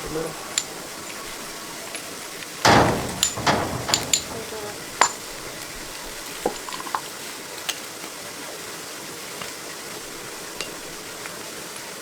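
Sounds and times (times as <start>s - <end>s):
tools clicking and clinking: 2.7s - 5.2s.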